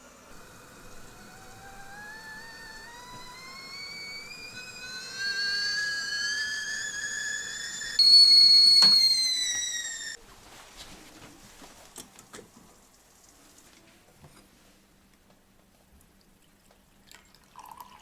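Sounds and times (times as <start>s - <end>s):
high whistling tone rising in pitch: 0.0s - 10.2s
faint ticks and drips: 11.9s - 14.4s, 15.1s - 18.0s.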